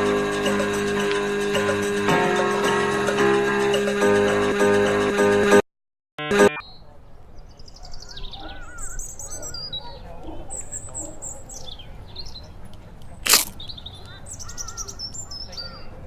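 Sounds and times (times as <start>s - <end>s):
music: 0.0s - 5.6s, 6.2s - 6.6s
birds trilling and chirping: 7.4s - 12.6s, 13.5s - 16.0s.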